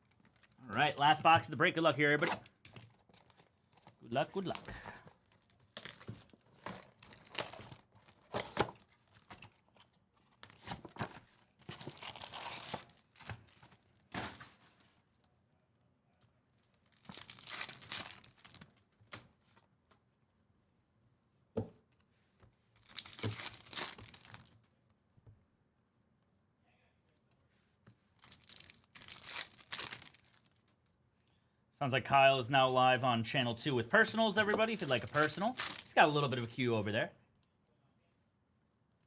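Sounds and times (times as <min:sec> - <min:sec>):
foil wrappers tearing and crinkling: 0:04.4 - 0:09.3, 0:11.7 - 0:14.5, 0:16.8 - 0:18.8, 0:22.8 - 0:24.6, 0:28.2 - 0:30.7, 0:34.3 - 0:36.0.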